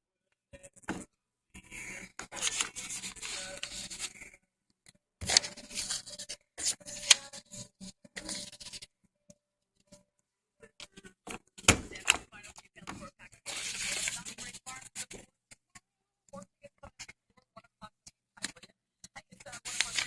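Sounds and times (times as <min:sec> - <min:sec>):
paper rustling and sliding: 0:02.2 - 0:04.2, 0:05.2 - 0:07.6, 0:08.2 - 0:08.8, 0:11.7 - 0:12.3, 0:12.9 - 0:14.5, 0:19.6 - 0:20.0.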